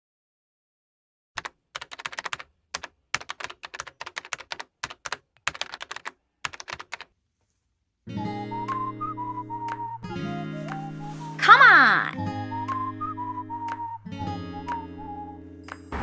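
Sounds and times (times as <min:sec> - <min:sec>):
typing on a keyboard: 0:01.4 - 0:07.1.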